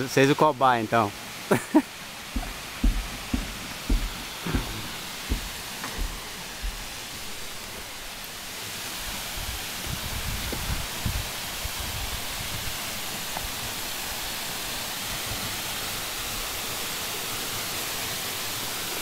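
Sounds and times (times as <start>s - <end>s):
waterfall rushing: 0.0s - 19.0s
low knocks: 2.4s - 7.0s.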